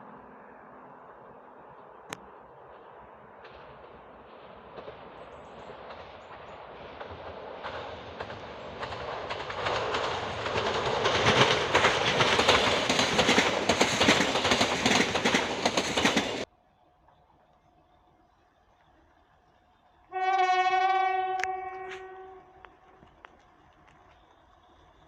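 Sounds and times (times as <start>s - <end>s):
train wheels clattering: 2.7s - 16.5s.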